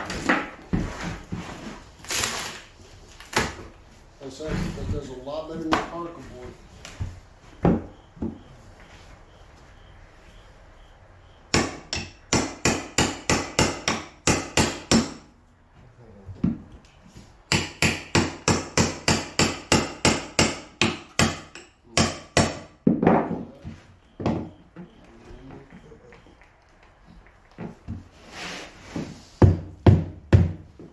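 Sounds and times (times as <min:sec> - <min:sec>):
hammer striking wood: 0:11.5 - 0:15.3, 0:17.5 - 0:23.5, 0:29.4 - 0:30.7.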